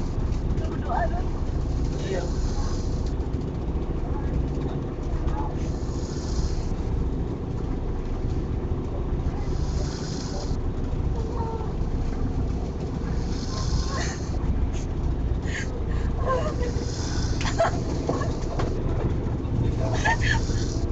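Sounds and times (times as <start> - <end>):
low engine drone: 0.0 - 20.9
person snoring: 5.7 - 6.8, 9.5 - 10.6, 13.2 - 14.3.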